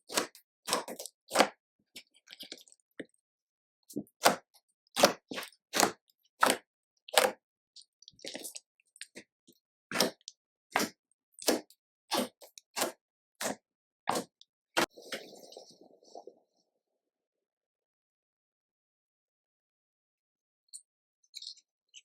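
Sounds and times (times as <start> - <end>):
slime squelching: 0.0 - 3.2, 3.9 - 16.2.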